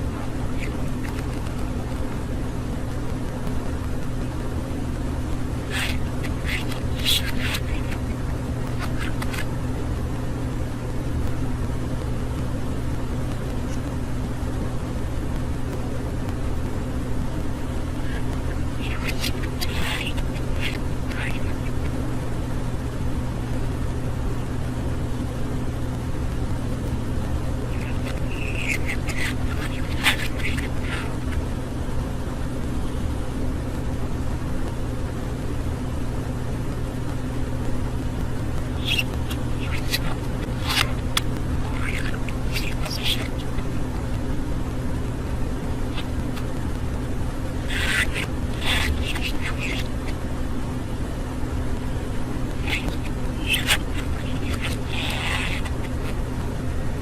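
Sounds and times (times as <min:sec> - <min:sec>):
steady low hum: 0:00.0 - 0:57.0
budgerigar chirps: 0:00.2 - 0:01.6, 0:05.7 - 0:09.5, 0:17.9 - 0:22.0, 0:27.7 - 0:31.4, 0:38.7 - 0:44.0, 0:47.6 - 0:50.2, 0:52.5 - 0:56.2.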